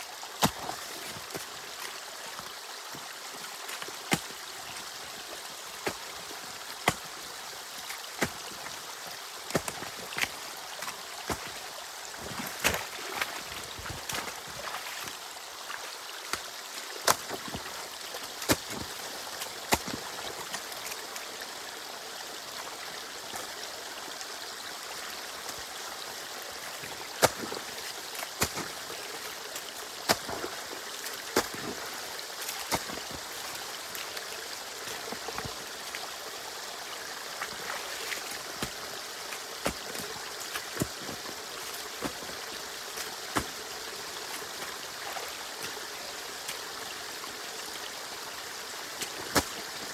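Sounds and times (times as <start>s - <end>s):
water trickling through canal: 0.0s - 49.9s.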